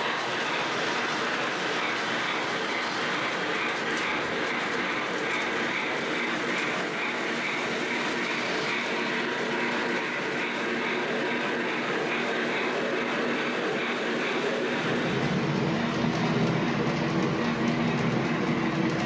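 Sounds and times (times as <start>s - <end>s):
model train wheels rolling on track: 14.8s - 19.0s.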